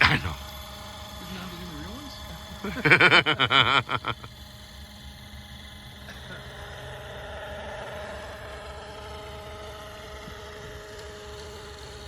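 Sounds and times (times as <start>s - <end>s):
model helicopter rotor whine: 0.0s - 12.0s.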